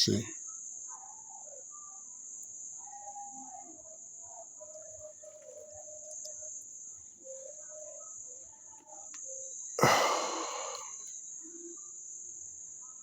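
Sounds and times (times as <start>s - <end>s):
insects trilling: 9.3s - 12.7s.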